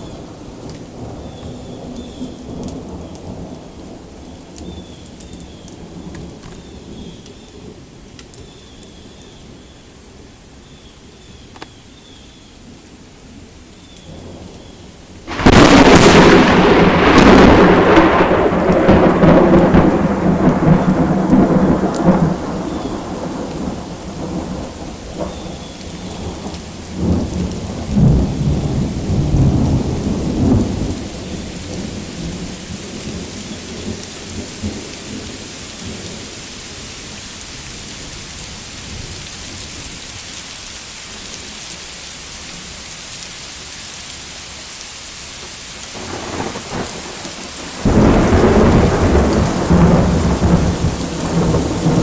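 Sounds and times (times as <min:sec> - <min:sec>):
steady rain hissing: 0:00.0 - 0:52.0
thunder crack and rumble: 0:15.2 - 0:35.2, 0:46.0 - 0:52.0.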